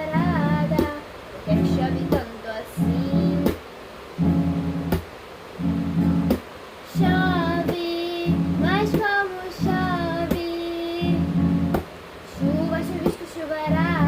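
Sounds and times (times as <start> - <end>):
person singing: 0.0 - 3.6, 6.9 - 11.7, 12.3 - 14.0
acoustic guitar strumming: 0.0 - 14.0.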